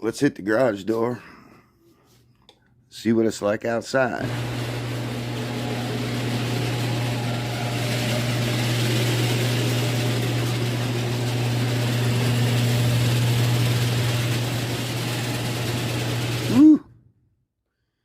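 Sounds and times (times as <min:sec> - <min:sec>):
garage door motor hum: 0:04.2 - 0:16.7
garage door travelling: 0:04.4 - 0:16.5.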